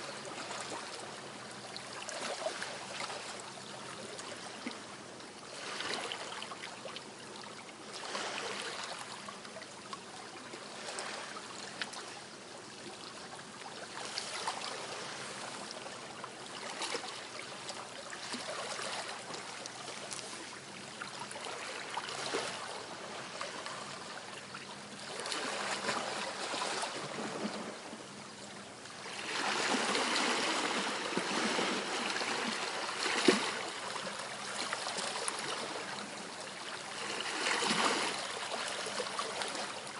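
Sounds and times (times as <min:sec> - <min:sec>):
small waves washing on shore: 0:00.0 - 0:39.9.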